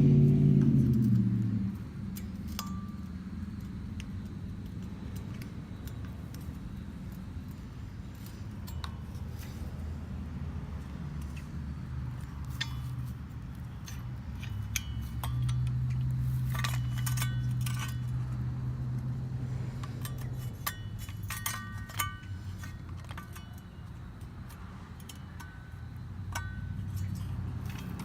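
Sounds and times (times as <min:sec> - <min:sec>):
steady low hum: 0:00.0 - 0:28.0
screwdriver tapping metal: 0:19.9 - 0:28.0.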